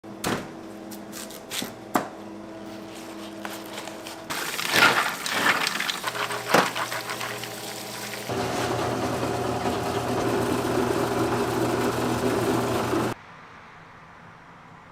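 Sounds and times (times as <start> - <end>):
steady kitchen hum: 0.1 - 13.2
kitchen clatter: 4.3 - 8.3.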